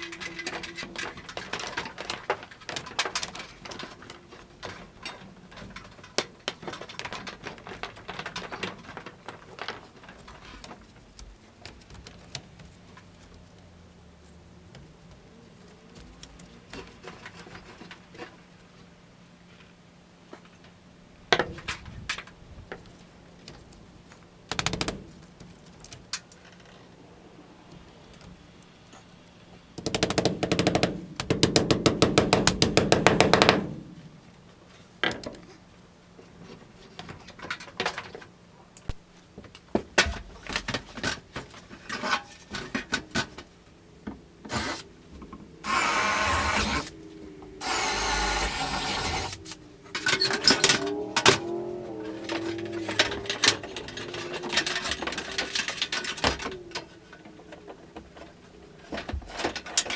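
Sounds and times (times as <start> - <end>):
power drill running: 45.6 - 46.9, 47.6 - 49.5.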